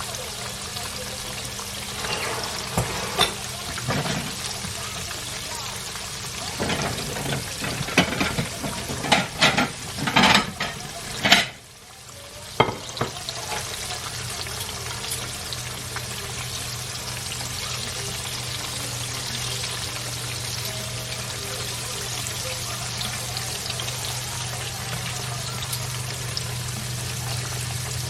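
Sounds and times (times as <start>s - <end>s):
clattering knocks and clicks: 6.6s - 11.6s.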